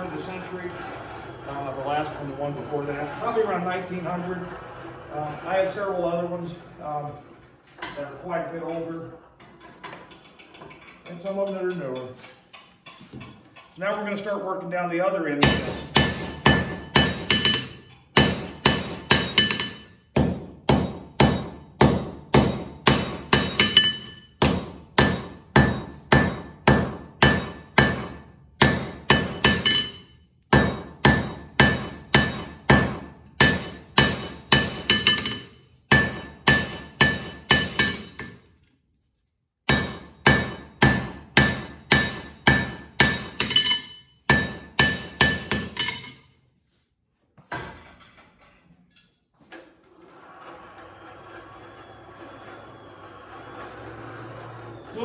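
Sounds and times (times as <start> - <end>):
hammer ringing on anvil: 15.4 - 38.4, 39.7 - 46.2.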